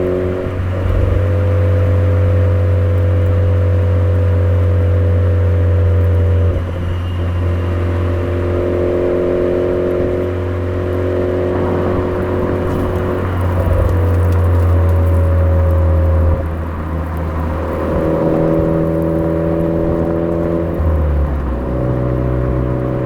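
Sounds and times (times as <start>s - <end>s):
car engine droning: 0.0s - 23.0s.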